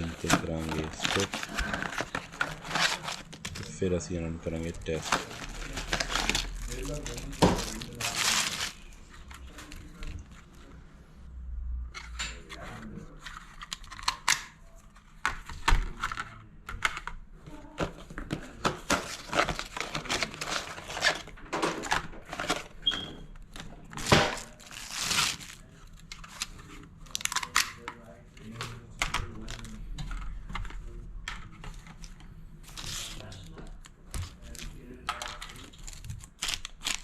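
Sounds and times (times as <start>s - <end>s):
crinkling and rustling: 0.0s - 10.7s, 12.0s - 37.0s.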